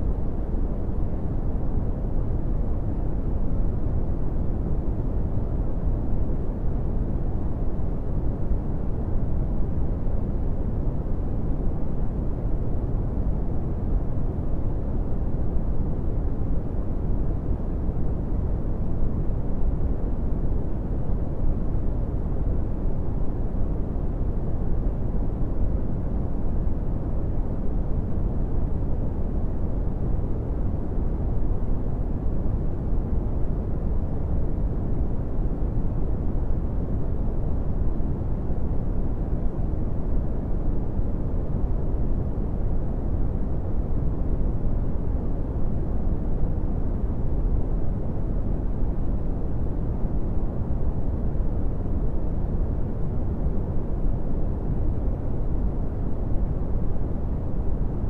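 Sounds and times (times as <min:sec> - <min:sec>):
brown noise hiss: 0:00.0 - 0:58.0.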